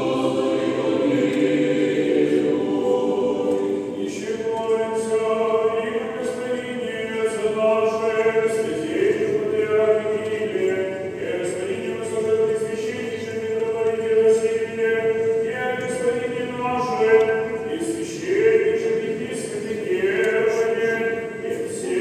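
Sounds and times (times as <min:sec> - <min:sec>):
choir singing long notes: 0:00.0 - 0:04.7.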